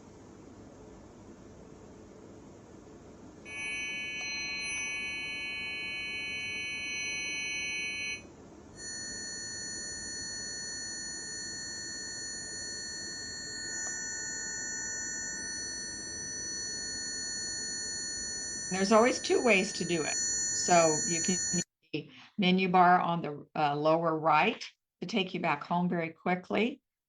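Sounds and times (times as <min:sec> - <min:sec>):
steady electronic tones: 0:03.5 - 0:08.2, 0:18.1 - 0:21.6.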